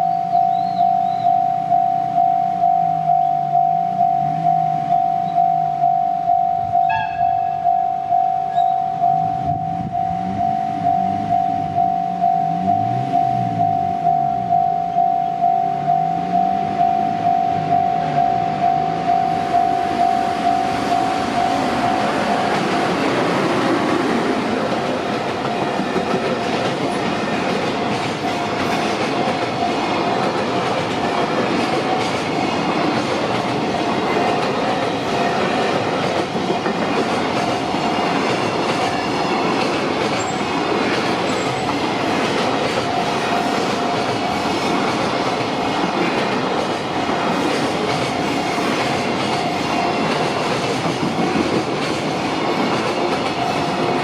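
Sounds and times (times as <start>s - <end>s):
level crossing warning bell: 0.0s - 23.8s, 25.1s - 30.7s, 37.6s - 44.7s
train wheels clattering over joints: 21.2s - 54.0s.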